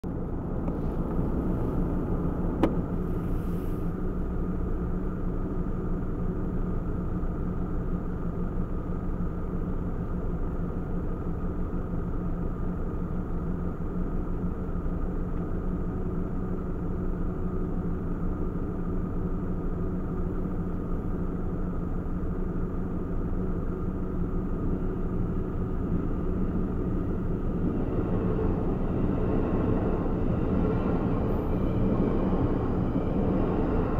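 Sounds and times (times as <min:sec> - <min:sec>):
vehicle engines rumbling: 0:00.0 - 0:07.6, 0:19.6 - 0:33.9.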